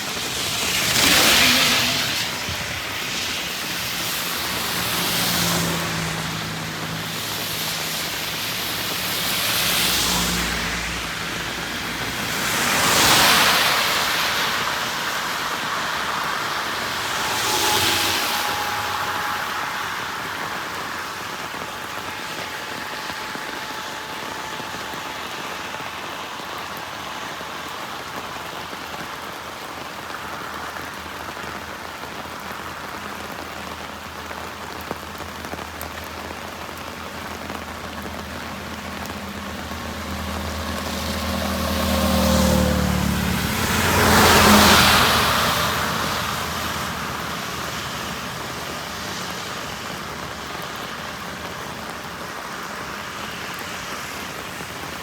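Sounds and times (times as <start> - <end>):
heavy rain falling: 0.0 - 55.0
tyres hissing through water: 0.0 - 55.0
truck engine hum: 34.4 - 55.0.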